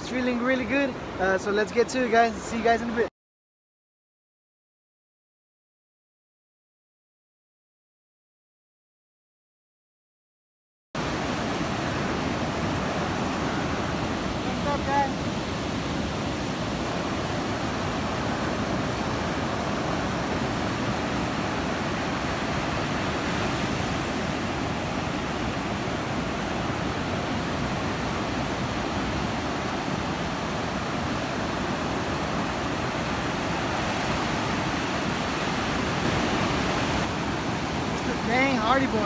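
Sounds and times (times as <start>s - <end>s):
ocean surf: 0.0s - 3.1s, 11.0s - 39.0s
wind: 0.0s - 3.1s, 11.0s - 39.0s.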